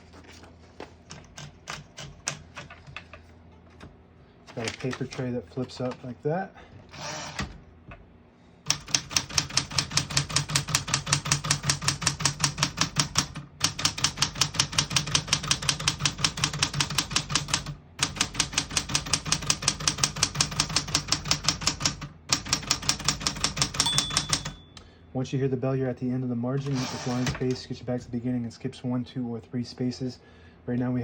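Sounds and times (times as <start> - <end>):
manual typewriter typing: 1.1 - 3.0, 4.5 - 6.0, 8.7 - 24.6.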